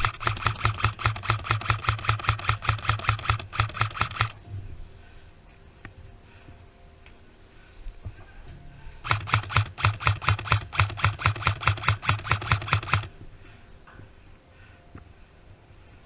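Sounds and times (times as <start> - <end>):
airsoft rifle rapid fire: 0.0 - 4.4, 9.0 - 13.1.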